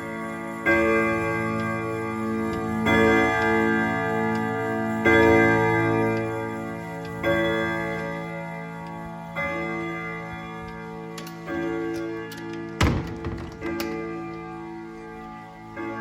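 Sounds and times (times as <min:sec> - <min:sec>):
clock striking: 0:00.0 - 0:16.0.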